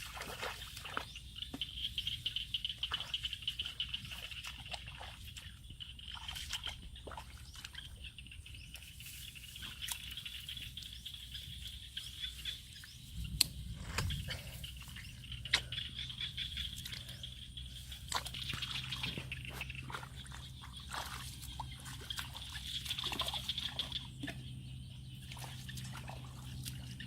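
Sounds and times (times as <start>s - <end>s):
water splashing by hand: 18.0s - 24.4s, 25.1s - 27.0s.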